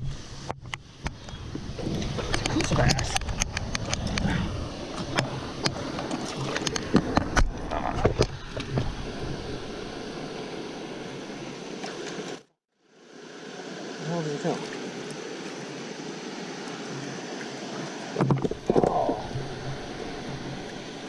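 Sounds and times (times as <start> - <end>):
creek water rushing: 0.0 - 21.0.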